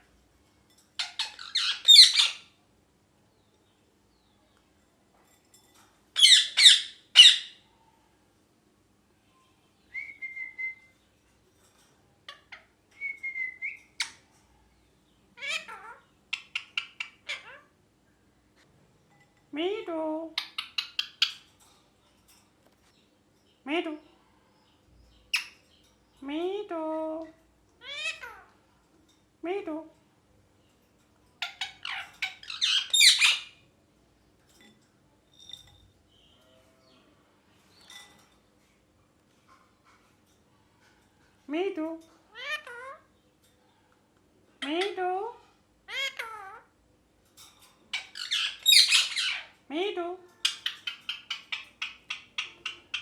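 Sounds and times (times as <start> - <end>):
parrot squawk: 1.0 - 2.5, 6.2 - 7.6, 15.4 - 17.7, 27.8 - 28.5, 31.4 - 33.6, 42.3 - 43.1, 45.9 - 46.7, 48.0 - 49.5
parrot chirps: 1.0 - 2.6, 6.2 - 7.7, 15.4 - 17.8, 20.4 - 21.5, 31.4 - 33.6, 45.9 - 46.7, 47.9 - 49.6, 50.4 - 53.0
parrot whistles and calls: 9.9 - 11.0, 13.0 - 14.2.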